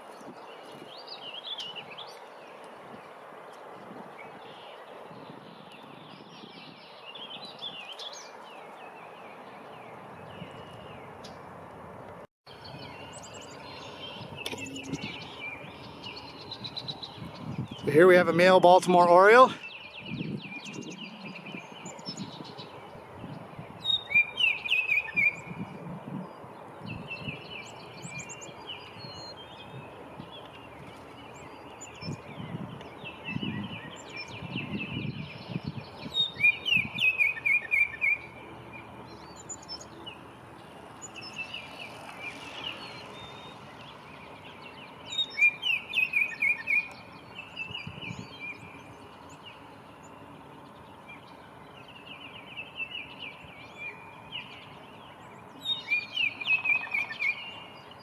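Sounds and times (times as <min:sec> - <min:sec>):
birds chirping: 0:00.0 - 0:58.0
songbird loud phrase of clear notes: 0:17.7 - 0:19.8.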